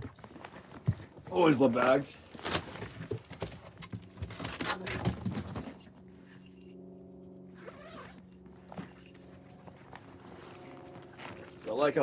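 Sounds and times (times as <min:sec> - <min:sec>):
zipper pulls jingling: 0:07.5 - 0:12.0
bag rustling: 0:07.6 - 0:11.8.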